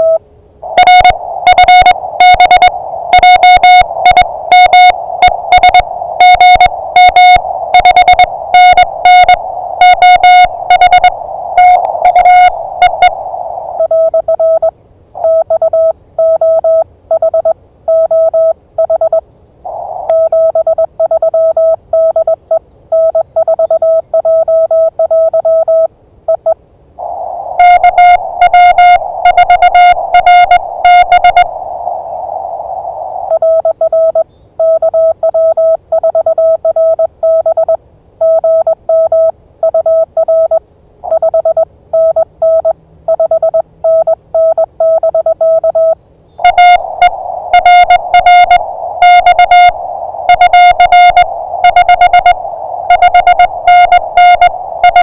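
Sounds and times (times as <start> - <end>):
radio receiver hiss: 0.0 - 15.5, 19.6 - 23.9, 26.9 - 34.3, 45.0 - 55.0
clean morse code tone: 0.0 - 19.2, 20.1 - 22.4, 27.6 - 31.8, 33.3 - 55.0
harsh buzzy morse code tone: 0.0 - 19.2, 20.1 - 26.6, 27.6 - 31.7, 33.3 - 55.0.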